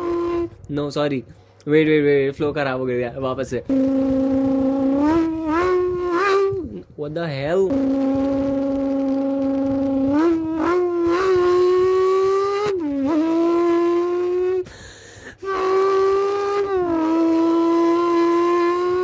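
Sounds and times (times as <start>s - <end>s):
person imitating engine with mouth: 0.0s - 0.7s, 3.7s - 6.9s, 7.7s - 19.0s.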